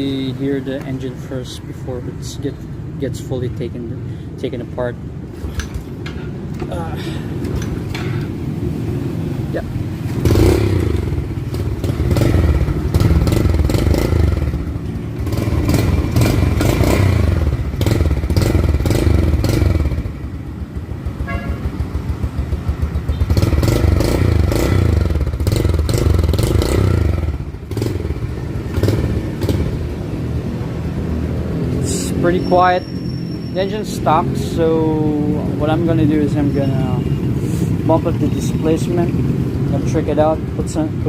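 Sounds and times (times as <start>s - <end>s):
motorcycle engine revving: 7.7s - 41.0s.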